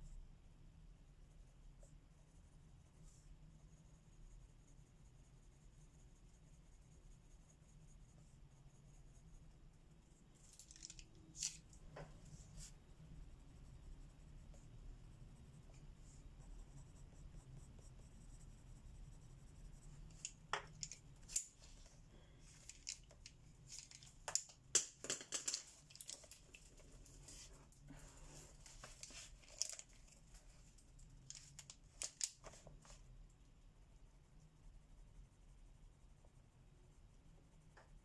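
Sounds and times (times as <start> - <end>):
faint low hum: 0.0 - 25.0, 25.6 - 38.0
pencil scratching on paper: 1.1 - 10.5, 12.2 - 12.8, 13.4 - 20.5, 26.3 - 33.0.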